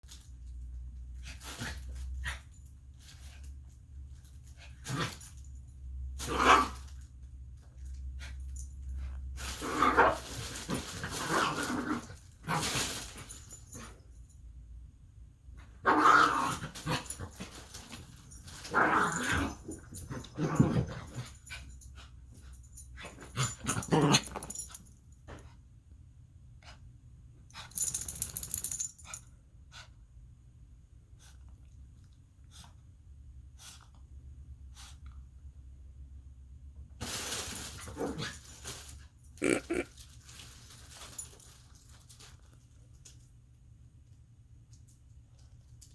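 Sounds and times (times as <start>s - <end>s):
dog growling and barking: 6.2s - 6.9s, 9.4s - 13.9s, 15.8s - 22.1s, 23.0s - 24.8s, 37.8s - 38.6s, 39.4s - 40.1s.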